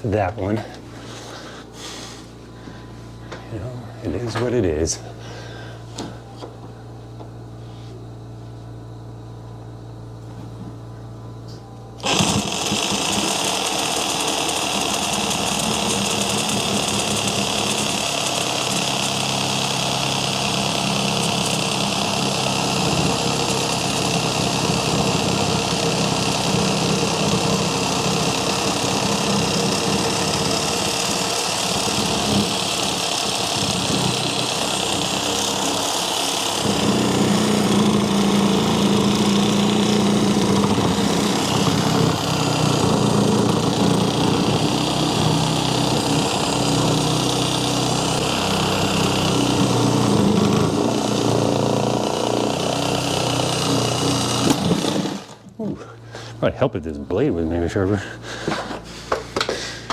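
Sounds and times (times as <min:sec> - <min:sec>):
low steady hum: 0:00.0 - 0:12.0
power saw cutting plastic pipe: 0:12.0 - 0:55.7.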